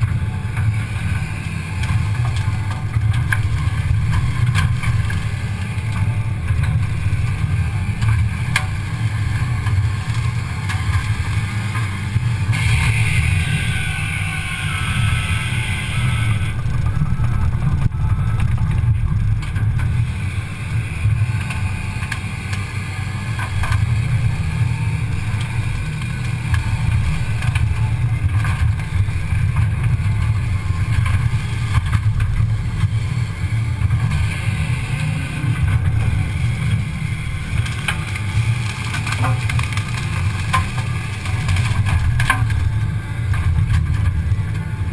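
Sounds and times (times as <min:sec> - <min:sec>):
excavator engine rumble: 0:00.0 - 0:44.9
knocks and rattles: 0:21.0 - 0:44.9.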